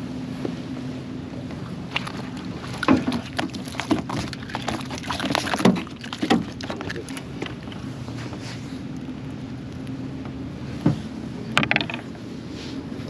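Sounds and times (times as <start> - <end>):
steady low hum: 0.0 - 13.0
knocks and taps: 11.6 - 12.0.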